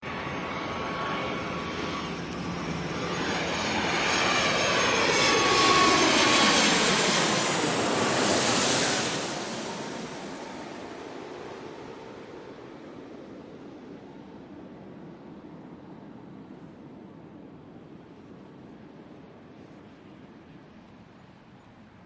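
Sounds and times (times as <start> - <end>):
airplane passing low overhead: 0.0 - 22.0.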